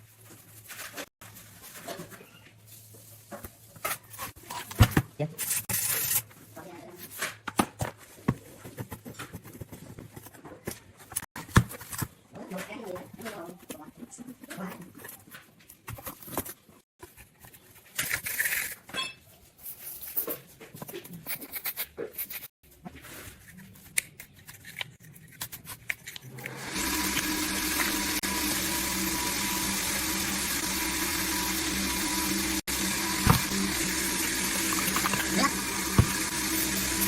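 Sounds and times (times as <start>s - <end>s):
machine humming: 26.5s - 37.0s.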